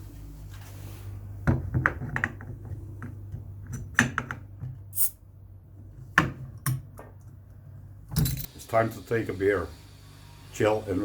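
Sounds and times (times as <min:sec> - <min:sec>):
gas hiss: 0:04.9 - 0:05.2, 0:08.5 - 0:11.0.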